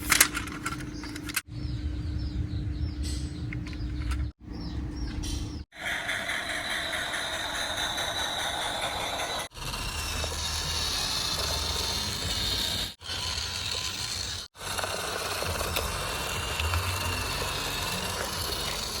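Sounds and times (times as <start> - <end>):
toy electric motor whining: 5.8 - 19.0.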